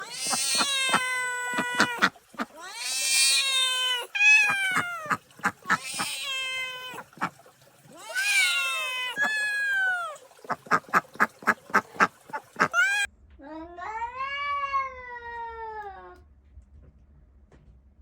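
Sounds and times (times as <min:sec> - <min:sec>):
cat meowing: 0:00.0 - 0:07.3, 0:07.9 - 0:10.3, 0:12.6 - 0:13.1.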